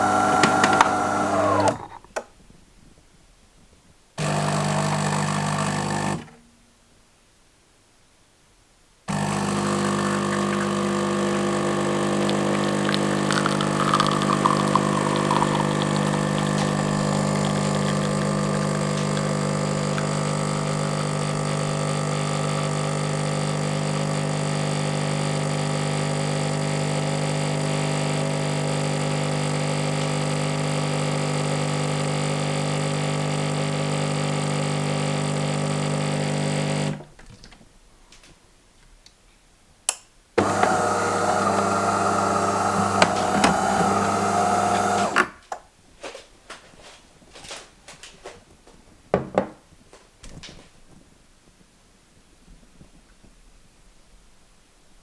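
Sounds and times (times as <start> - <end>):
coffee machine humming: 0.0 - 2.1, 4.2 - 6.3, 9.1 - 37.0, 40.4 - 45.3.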